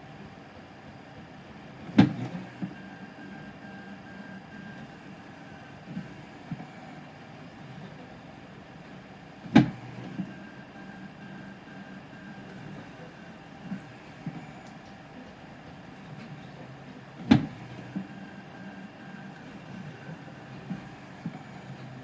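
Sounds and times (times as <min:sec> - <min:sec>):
steady hum: 0:00.0 - 0:22.0
printer tilt mechanism banging: 0:09.5 - 0:09.8, 0:17.2 - 0:17.6.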